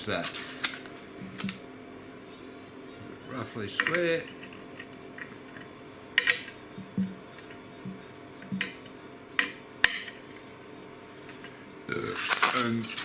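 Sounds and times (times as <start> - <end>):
sharp clicks and light knocks: 3.8 - 10.2.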